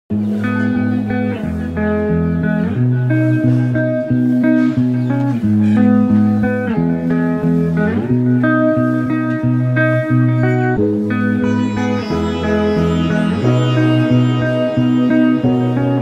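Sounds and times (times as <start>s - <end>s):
guitar-led instrumental music: 0.1s - 16.0s.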